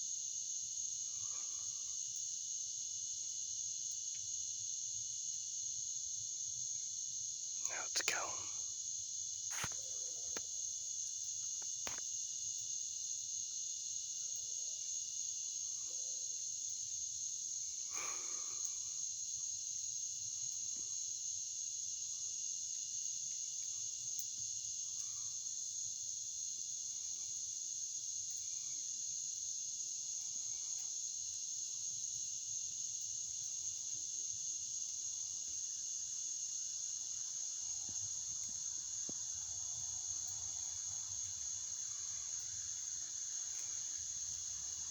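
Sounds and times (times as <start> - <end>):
high-pitched insect chorus: 0.0 - 44.9
faint rustle: 9.5 - 10.5.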